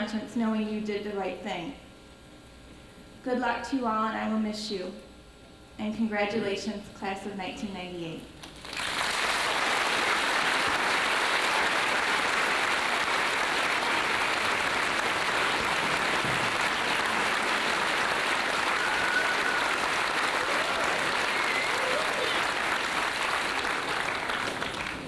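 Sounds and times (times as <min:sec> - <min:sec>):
audience applauding and cheering: 0:08.6 - 0:25.0.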